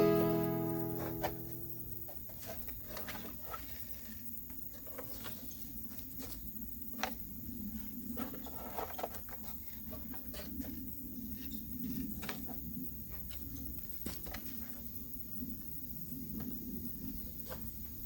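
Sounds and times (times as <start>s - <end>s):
low steady hum: 0.0s - 2.1s.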